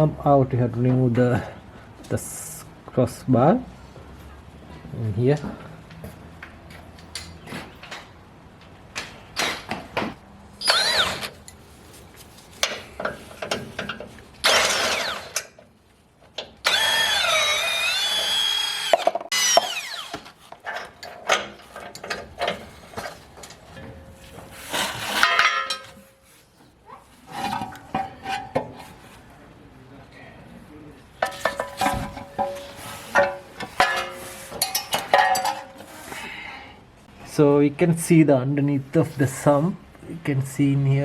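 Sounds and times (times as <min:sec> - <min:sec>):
power tool whining: 0:10.6 - 0:11.3, 0:14.4 - 0:15.5, 0:16.6 - 0:20.2.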